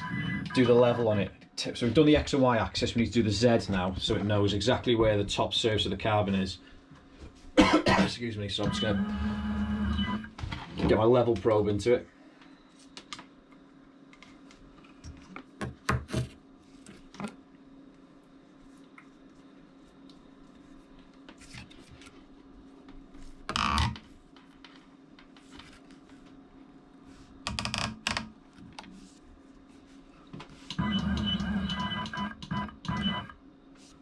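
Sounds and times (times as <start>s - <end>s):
steady low hum: 7.6s - 10.4s.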